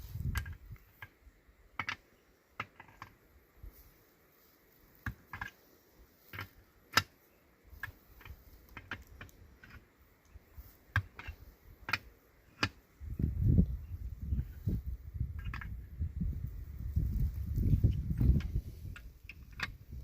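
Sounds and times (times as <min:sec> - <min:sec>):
sharp clicks and knocks: 0:00.2 - 0:01.2, 0:01.8 - 0:02.0, 0:07.8 - 0:12.8, 0:15.4 - 0:15.8, 0:17.9 - 0:20.0.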